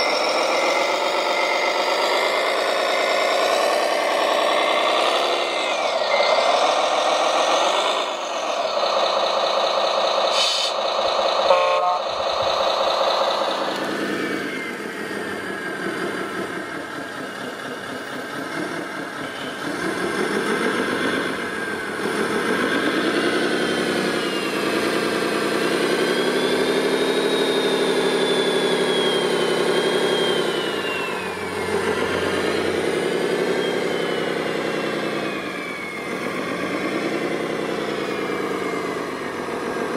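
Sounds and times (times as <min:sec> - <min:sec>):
model engine sound: 0:00.0 - 0:39.9
reversing beeps: 0:11.5 - 0:12.0.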